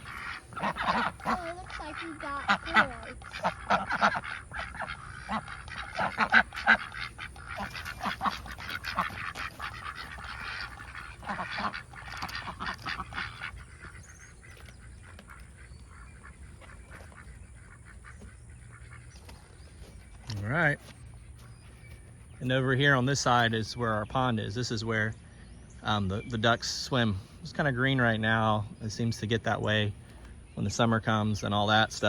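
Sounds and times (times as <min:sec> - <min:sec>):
ducks quacking: 0:00.0 - 0:25.1.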